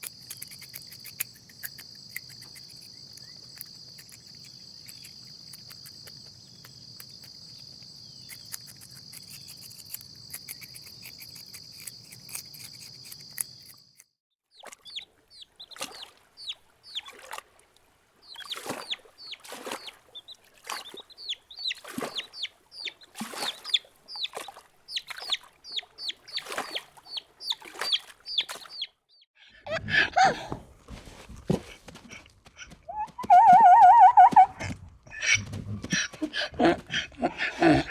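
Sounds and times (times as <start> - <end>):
crickets chirring: 0.0 - 14.0
loud animal call: 29.4 - 30.6, 32.0 - 37.9
chickens clucking: 29.5 - 37.9.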